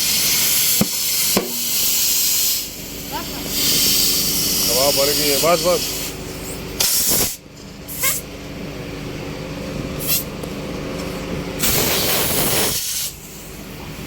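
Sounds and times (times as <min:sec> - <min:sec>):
compressed air hissing: 0:00.0 - 0:08.3, 0:10.0 - 0:10.3, 0:11.6 - 0:13.6
steady low hum: 0:00.0 - 0:14.0.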